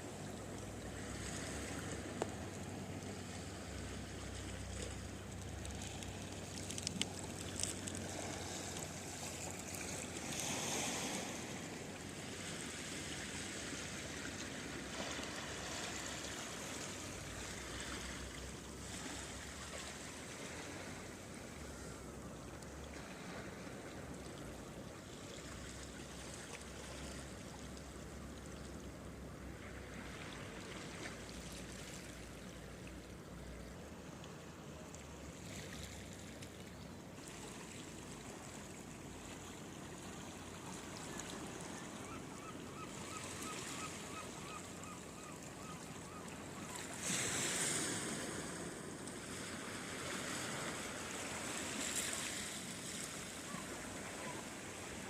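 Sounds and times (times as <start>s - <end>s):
surf washing among rocks: 4.3s - 21.3s, 46.4s - 55.0s.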